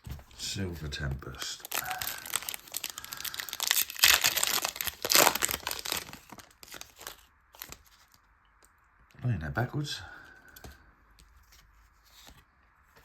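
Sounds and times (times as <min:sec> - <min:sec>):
foil wrapper crinkling and ripping: 0:01.4 - 0:08.2.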